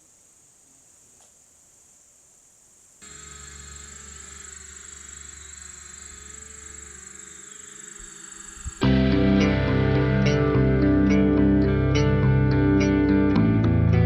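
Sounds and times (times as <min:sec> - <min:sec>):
faint high hiss: 0:00.0 - 0:08.9
quadcopter motors buzzing: 0:03.0 - 0:08.9.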